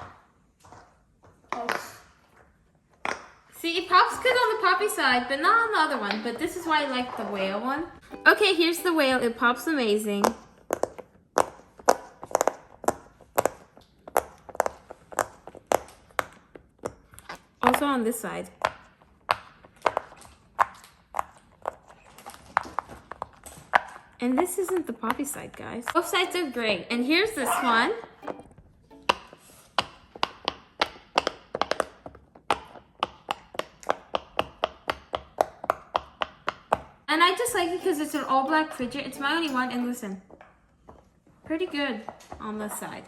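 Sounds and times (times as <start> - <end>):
pop-it toy popping: 28.2 - 37.0.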